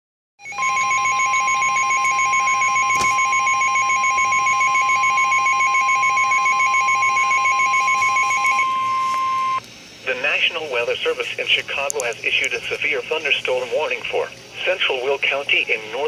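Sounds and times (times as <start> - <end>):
fast pulsing beep: 0.4 - 9.6
steady high alarm tone: 0.4 - 9.6.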